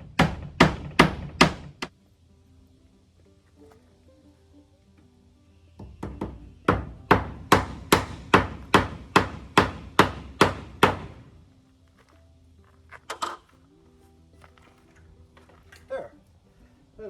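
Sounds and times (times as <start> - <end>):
hammer driving nail into wood: 0.0 - 1.9, 5.9 - 11.3.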